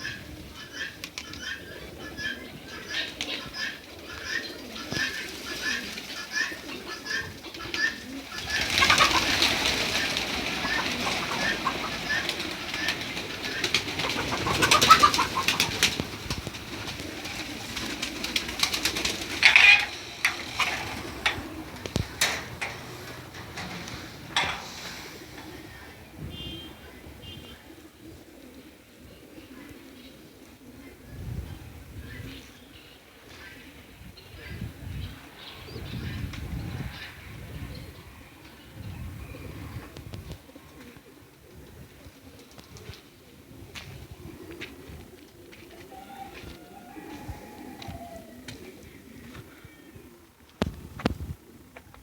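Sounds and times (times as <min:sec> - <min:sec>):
many birds calling over one another: 0:00.0 - 0:50.6
poultry short repeated calls: 0:05.0 - 0:16.0, 0:18.8 - 0:27.5.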